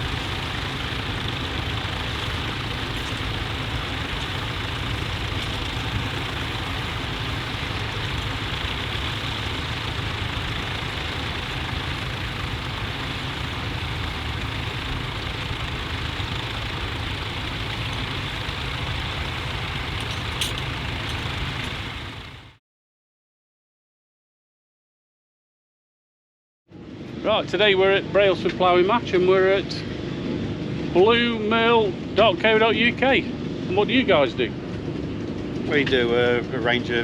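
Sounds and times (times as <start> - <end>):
tractor engine running: 0.0 - 22.6.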